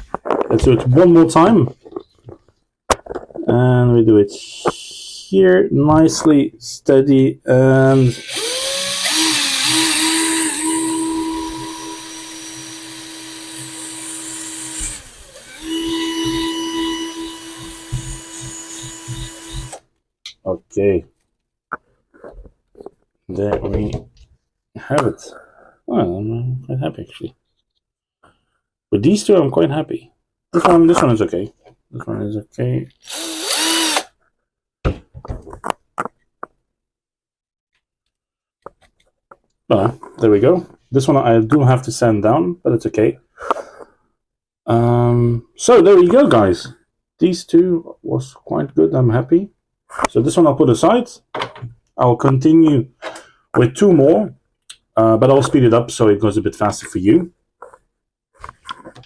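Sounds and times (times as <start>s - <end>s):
rotary tool drilling: 7.9s - 19.8s, 33.0s - 34.1s.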